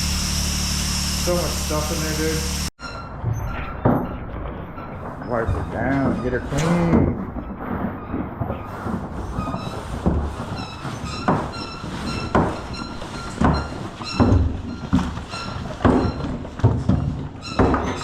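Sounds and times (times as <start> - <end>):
water hissing: 0.0 - 2.7
high squeaky tones: 0.0 - 3.8
scrubbing strokes on boat hull: 8.6 - 16.2.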